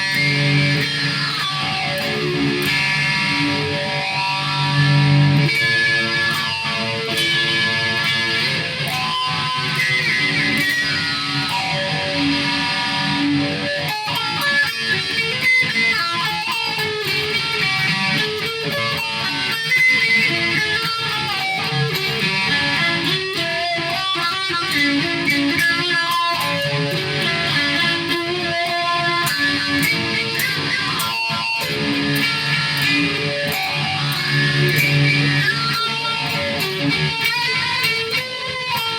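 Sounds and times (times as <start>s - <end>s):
guitar playing: 0.0s - 38.9s.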